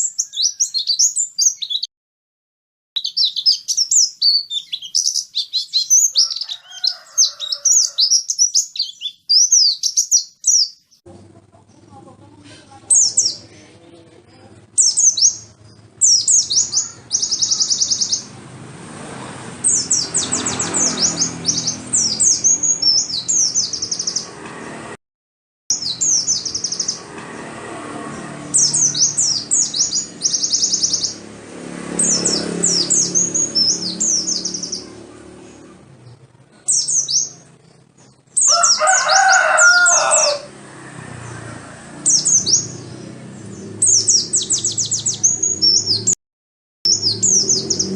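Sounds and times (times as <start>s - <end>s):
high rapid bird chirps and trills: 0.0s - 1.9s, 3.0s - 11.0s, 12.8s - 13.6s, 14.5s - 18.4s, 19.5s - 24.4s, 25.7s - 27.1s, 28.2s - 39.1s, 42.0s - 46.2s, 46.9s - 47.9s.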